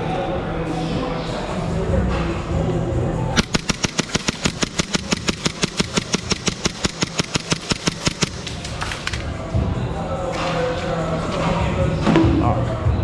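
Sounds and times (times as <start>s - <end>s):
airsoft rifle full-auto burst: 3.4s - 8.9s.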